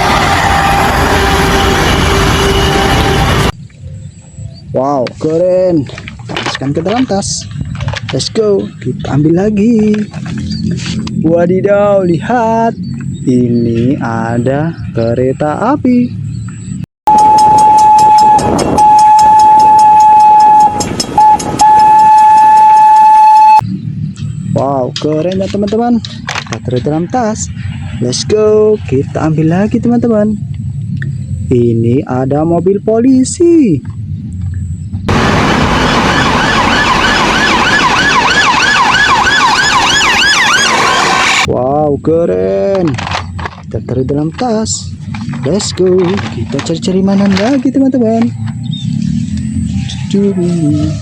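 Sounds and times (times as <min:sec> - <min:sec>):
police siren wailing: 0:00.0 - 0:03.5, 0:17.1 - 0:23.6, 0:35.1 - 0:41.5, 0:49.4 - 0:51.0
train whistle: 0:00.0 - 0:03.5, 0:17.1 - 0:23.6
traffic noise: 0:00.0 - 0:51.0.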